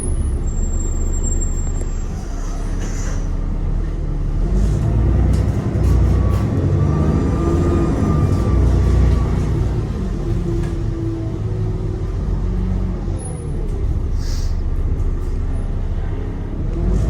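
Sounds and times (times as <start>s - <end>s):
bus diesel engine rumble: 0.0s - 17.0s.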